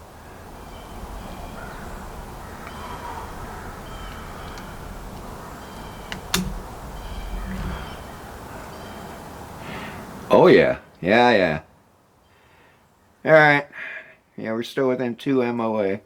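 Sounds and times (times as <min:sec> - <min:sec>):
birds calling: 0:00.0 - 0:10.3
sharp clicks: 0:03.9 - 0:08.1.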